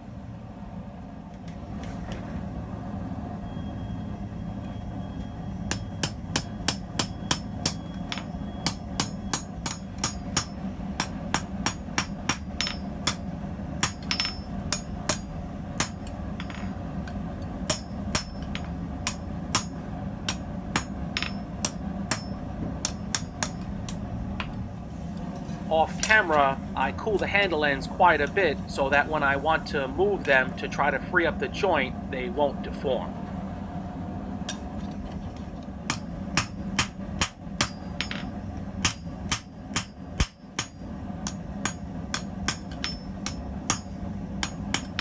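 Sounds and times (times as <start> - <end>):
steady low hum: 0.0 - 45.0
hammer striking steel on anvil: 5.7 - 24.6, 35.9 - 45.0.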